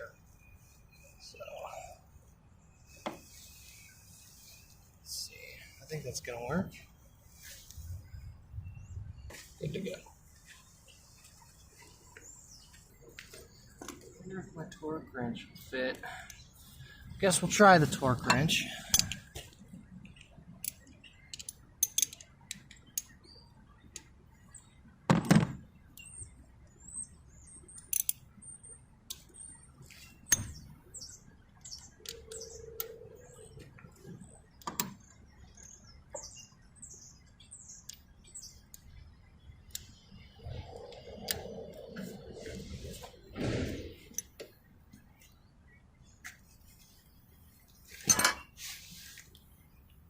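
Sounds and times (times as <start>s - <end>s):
small bird chirping: 25.8s - 50.0s.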